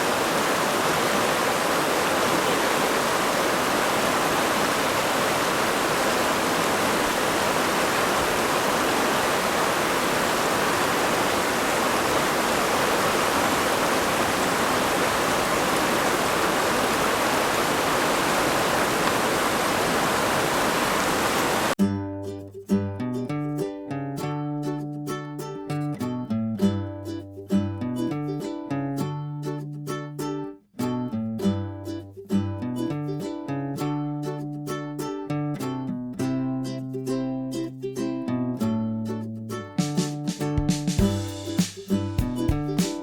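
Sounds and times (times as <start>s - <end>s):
river rushing: 0.0s - 21.8s.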